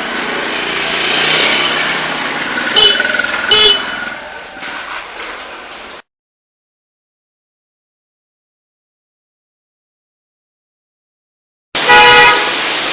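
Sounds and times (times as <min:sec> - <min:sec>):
vehicle noise rushing: 0:00.0 - 0:06.0
motorcycle horn beeps: 0:02.7 - 0:04.1, 0:11.8 - 0:12.5.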